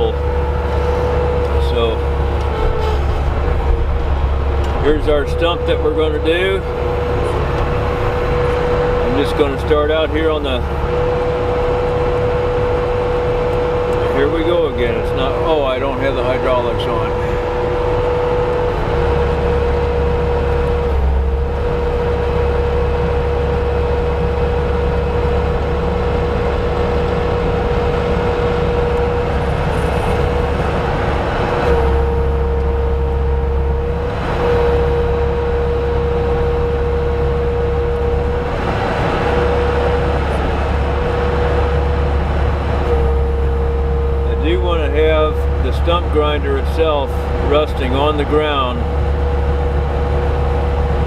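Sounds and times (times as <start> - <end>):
diesel engine running at high revs: 0.0 - 51.0
stump grinder whine: 0.0 - 51.0.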